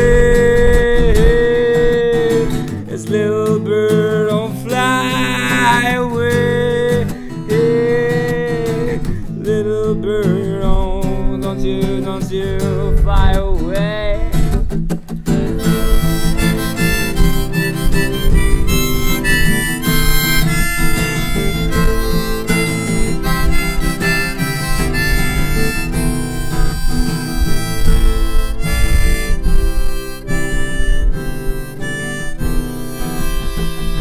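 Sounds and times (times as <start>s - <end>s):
strummed acoustic guitar: 0.0s - 34.0s
harmonica solo: 4.4s - 9.2s, 15.3s - 34.0s.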